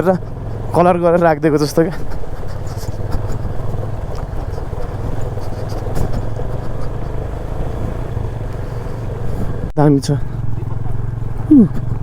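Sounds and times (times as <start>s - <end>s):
motorcycle engine droning: 0.0s - 12.0s
faint ticks: 2.1s - 7.3s.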